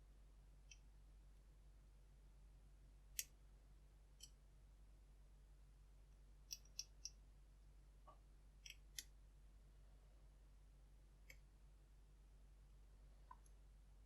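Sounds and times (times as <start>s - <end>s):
lock pick clicking on pins: 6.5s - 7.2s.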